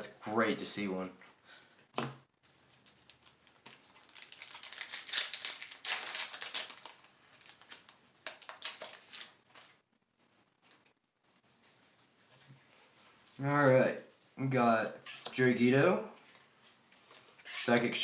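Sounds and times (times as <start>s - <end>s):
foil wrapper crinkling: 2.8s - 9.8s.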